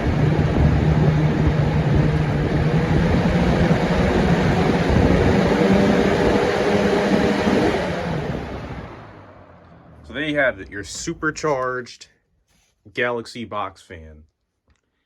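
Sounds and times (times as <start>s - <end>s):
box fan air rush: 0.0s - 10.3s
low motor hum: 0.0s - 11.6s.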